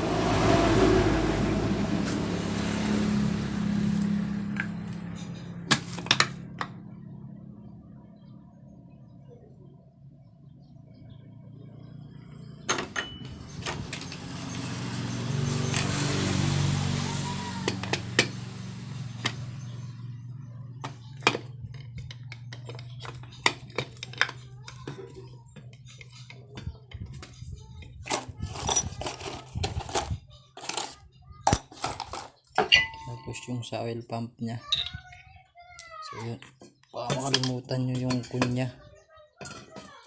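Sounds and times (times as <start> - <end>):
motor vehicle passing: 0.0 - 9.0, 13.3 - 23.8
metal engine parts clicking: 20.9 - 24.9.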